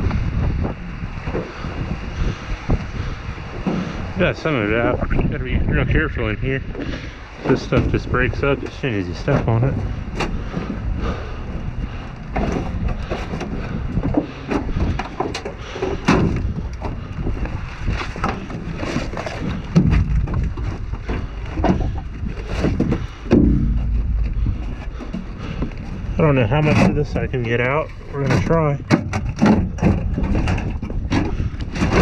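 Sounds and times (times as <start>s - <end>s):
trash crunching and clattering: 6.7s - 32.0s.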